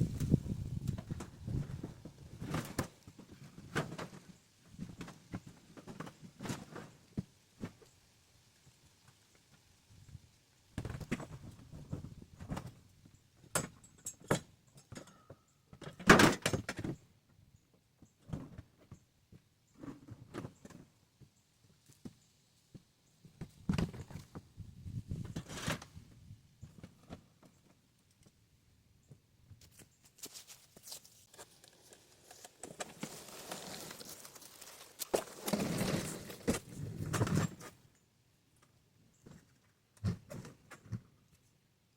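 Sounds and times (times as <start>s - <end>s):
rustling and scraping: 29.5s - 37.8s.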